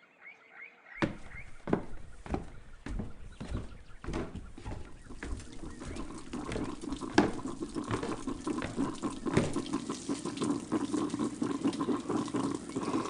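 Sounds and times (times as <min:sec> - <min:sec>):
water running from a tap: 0:04.1 - 0:13.0.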